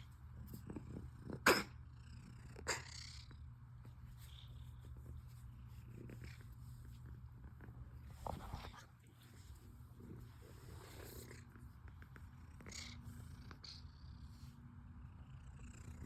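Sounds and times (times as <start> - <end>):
cat purring: 0.0 - 16.0
cat coughing: 1.4 - 1.8.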